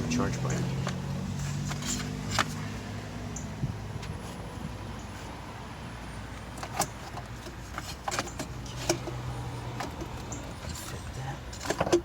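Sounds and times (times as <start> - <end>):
clicks and knocks of hard parts: 6.6 - 12.0.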